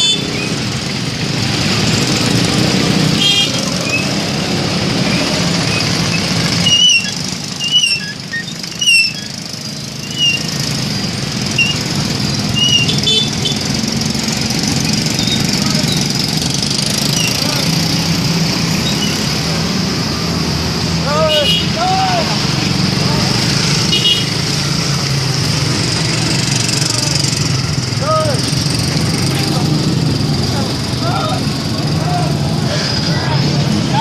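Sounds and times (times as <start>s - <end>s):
bus engine running: 0.0s - 34.0s
short high squeaks: 5.1s - 10.6s, 11.5s - 11.9s, 12.5s - 13.6s, 17.0s - 17.5s, 18.7s - 19.3s.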